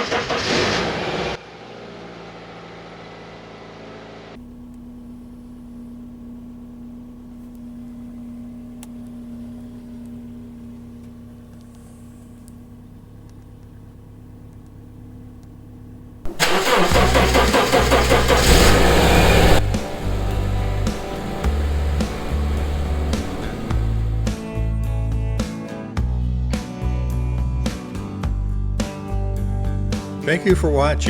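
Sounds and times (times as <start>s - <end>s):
car engine cranking and starting: 0.0s - 1.4s, 4.4s - 24.6s.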